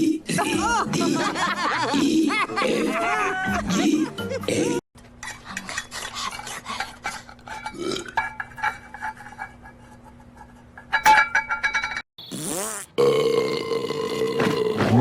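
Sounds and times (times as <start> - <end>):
music: 1.8 - 4.8
cartoon character burping: 12.3 - 15.0.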